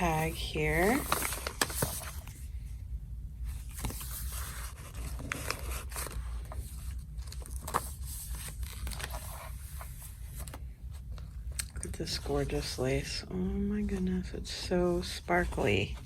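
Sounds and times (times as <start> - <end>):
paper pages rustling: 0.0 - 2.6, 3.4 - 12.8.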